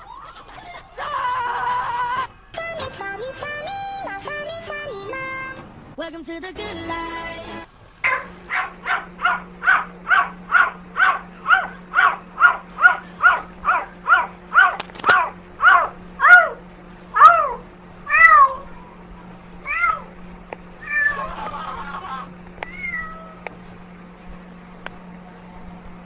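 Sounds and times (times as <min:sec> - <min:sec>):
cat meowing: 0:17.2 - 0:18.7, 0:19.6 - 0:20.1, 0:20.8 - 0:21.6, 0:22.6 - 0:23.4.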